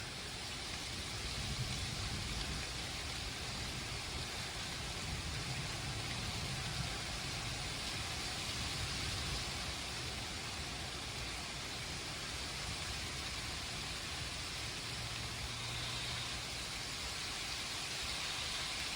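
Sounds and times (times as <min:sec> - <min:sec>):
steady rain hissing: 0:00.0 - 0:18.9.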